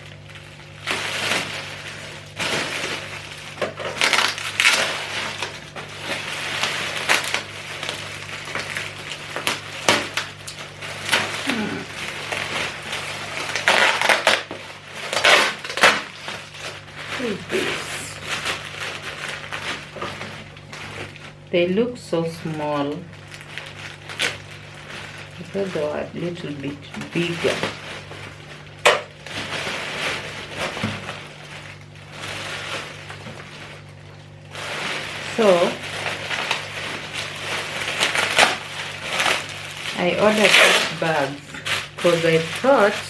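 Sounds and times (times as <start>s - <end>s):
plastic packaging crinkling: 0.0s - 43.0s.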